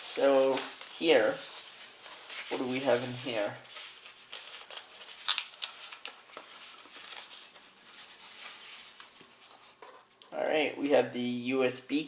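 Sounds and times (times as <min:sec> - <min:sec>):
rustling cardboard and plastic: 0:00.0 - 0:10.2.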